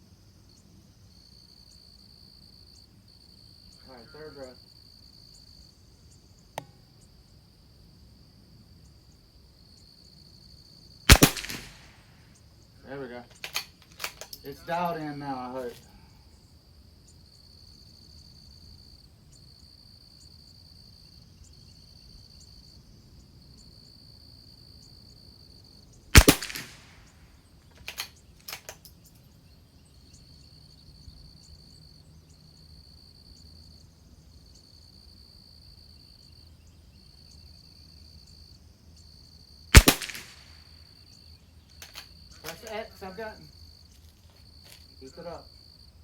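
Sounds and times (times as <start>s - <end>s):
crickets chirping: 0.0s - 46.0s
rifle bolt clicks: 11.1s - 12.0s, 26.2s - 26.9s, 39.8s - 40.4s
rifle shots: 11.1s - 12.1s, 26.2s - 27.1s, 39.8s - 40.6s.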